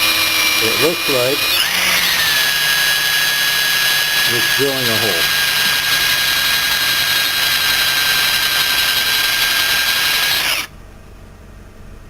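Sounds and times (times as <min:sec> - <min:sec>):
power drill boring into wood: 0:00.0 - 0:10.7.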